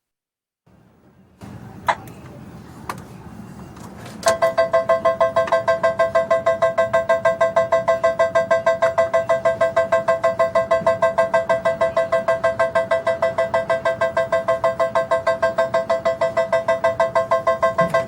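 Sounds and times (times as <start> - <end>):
slot machine low hum: 3.2 - 18.0
rapid electronic beeping: 4.4 - 18.0.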